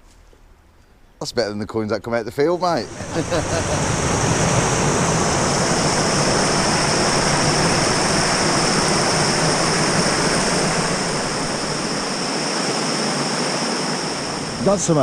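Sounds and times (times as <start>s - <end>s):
river water rushing: 2.9s - 15.0s.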